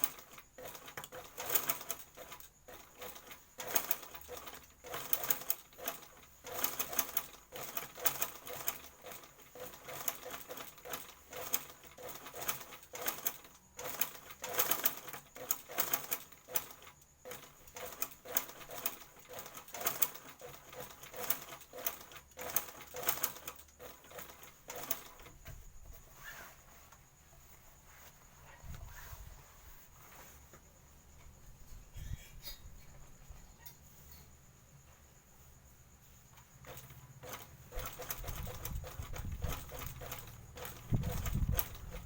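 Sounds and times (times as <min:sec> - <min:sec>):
sewing machine stitching: 0:00.0 - 0:25.4, 0:36.6 - 0:42.0.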